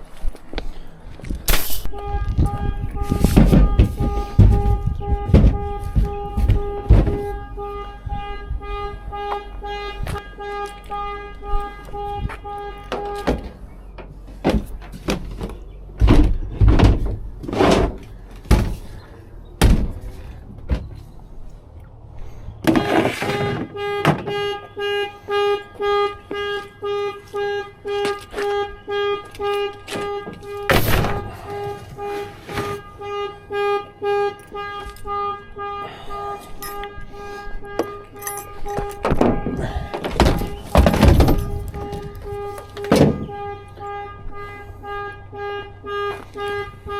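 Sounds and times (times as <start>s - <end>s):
car horn honking: 1.8s - 14.8s, 22.6s - 46.9s
heavy thuds: 2.2s - 8.6s, 11.9s - 21.1s, 29.8s - 33.0s, 37.6s - 43.4s.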